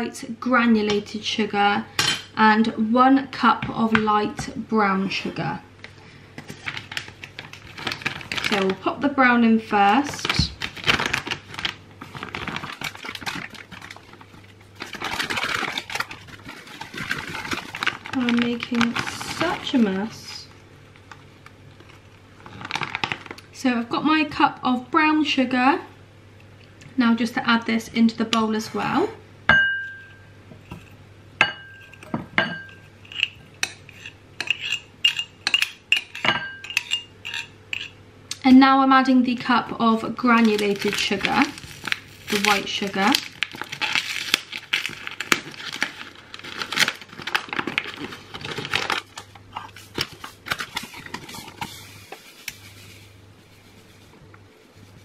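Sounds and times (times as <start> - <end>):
sugar scraping and tapping: 30.0 - 38.0
dense rustling scrape: 49.7 - 55.0.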